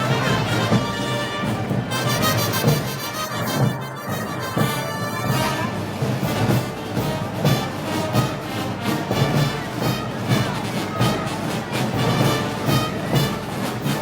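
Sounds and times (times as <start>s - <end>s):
steady drum beat: 0.0s - 14.0s
wind band playing march: 0.0s - 14.0s.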